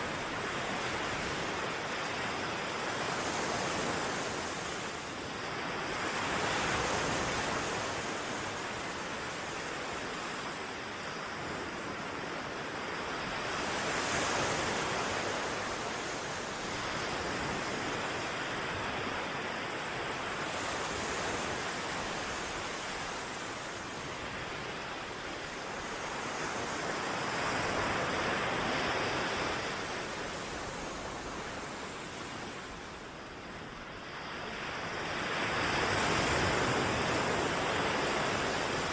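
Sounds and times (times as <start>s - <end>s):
waves breaking: 0.0s - 38.9s.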